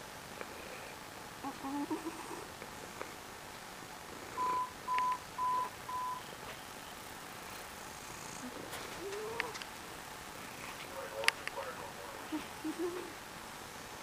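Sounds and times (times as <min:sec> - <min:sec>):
cat snoring: 0:01.7 - 0:02.5, 0:07.8 - 0:09.4
short electronic beeps: 0:04.4 - 0:06.2.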